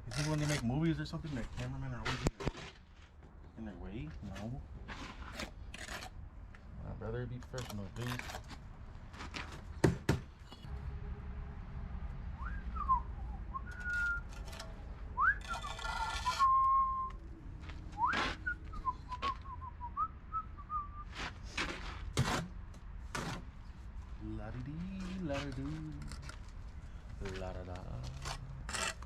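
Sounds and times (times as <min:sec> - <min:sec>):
sharp knocks: 0:09.8 - 0:10.6
person whistling a tune: 0:12.4 - 0:14.3, 0:15.2 - 0:17.2, 0:18.0 - 0:21.1
short scraping noise: 0:13.6 - 0:16.7.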